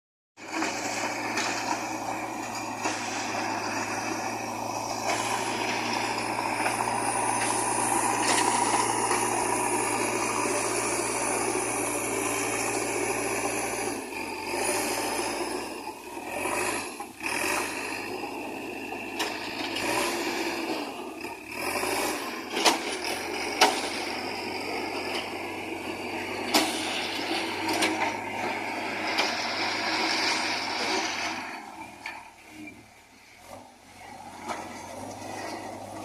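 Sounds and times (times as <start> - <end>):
diesel engine running: 0.4 - 36.0.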